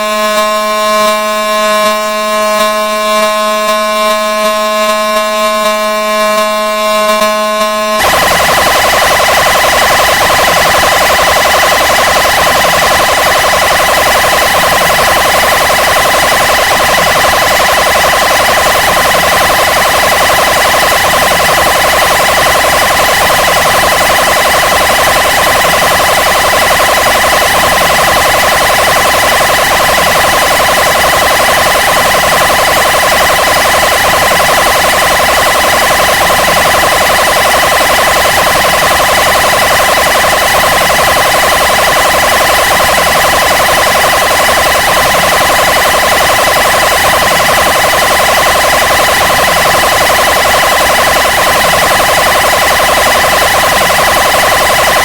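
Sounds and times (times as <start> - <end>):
siren rapid pulsing wail: 0.0 - 55.0.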